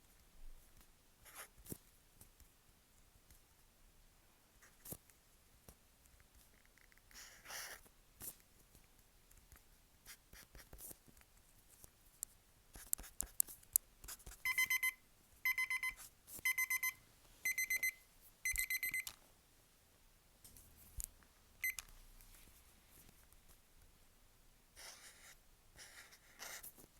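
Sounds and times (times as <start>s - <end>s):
timer alarm high beeps: 14.5s - 19.1s
marker scratching on paper: 24.8s - 26.9s.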